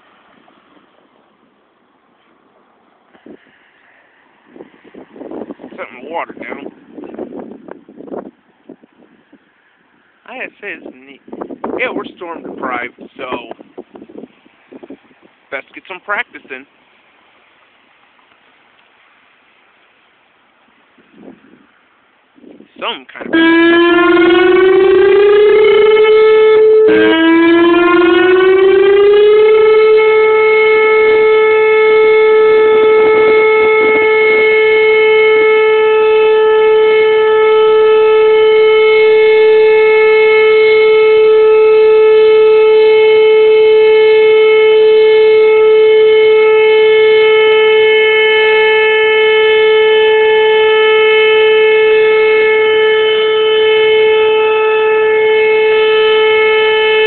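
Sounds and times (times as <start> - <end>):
outdoor warning siren alert tone: 23.2 - 57.0.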